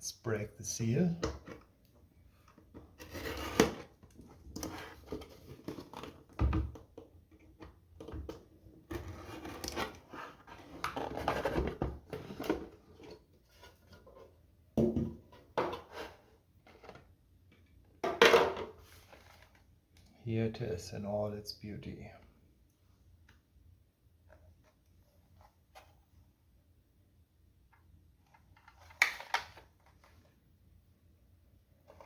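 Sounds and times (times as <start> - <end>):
cardboard and plastic packaging rustling: 2.6 - 6.4, 8.9 - 14.3, 18.8 - 19.7.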